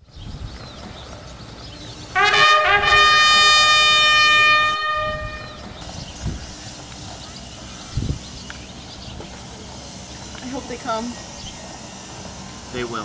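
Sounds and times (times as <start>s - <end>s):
horn blowing long note: 2.1s - 5.7s.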